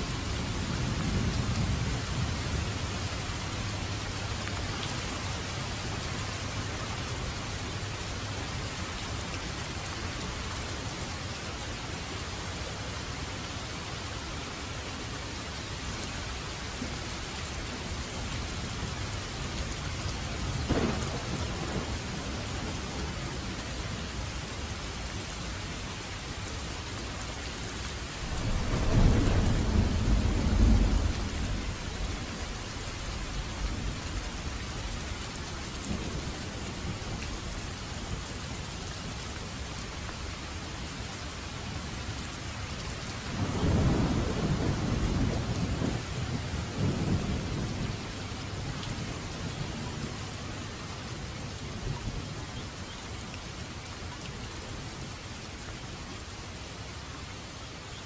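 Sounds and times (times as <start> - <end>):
steady rain: 0.0 - 58.0
low thunder rumble: 20.0 - 24.2, 28.1 - 37.7, 43.2 - 50.2
thunder crack: 20.7 - 22.0, 28.2 - 31.8.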